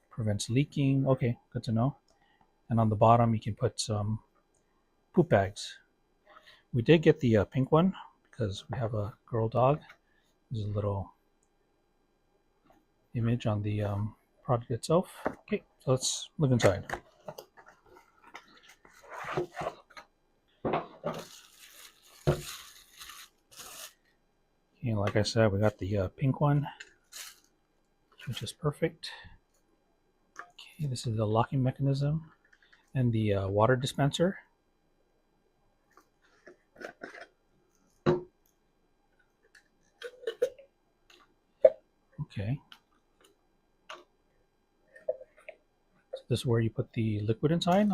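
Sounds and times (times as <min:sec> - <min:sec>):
plastic packaging rustling: 0:21.0 - 0:24.1, 0:27.0 - 0:27.5.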